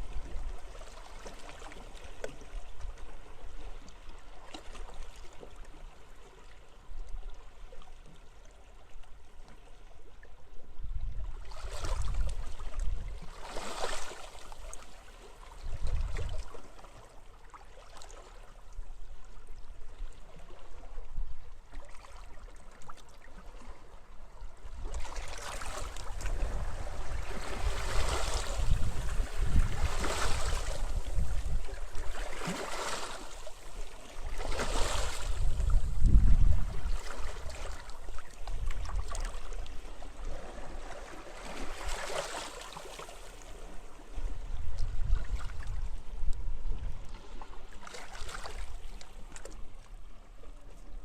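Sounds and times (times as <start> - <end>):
waves washing onto beach: 25.0 - 44.4
wind rumble: 35.3 - 37.0.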